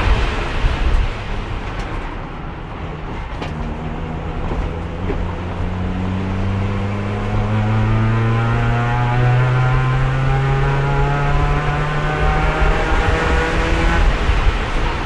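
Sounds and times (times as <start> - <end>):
race car engine accelerating: 3.2 - 15.0.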